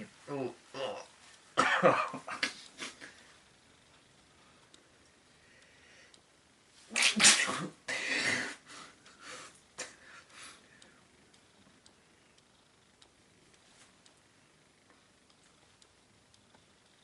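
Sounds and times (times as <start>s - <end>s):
person sneezing: 6.9s - 8.6s.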